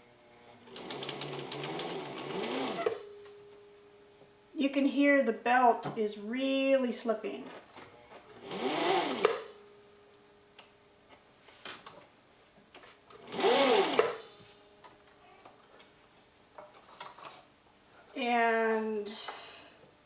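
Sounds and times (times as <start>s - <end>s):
sewing machine motor whining: 0.7s - 3.0s, 13.3s - 14.2s.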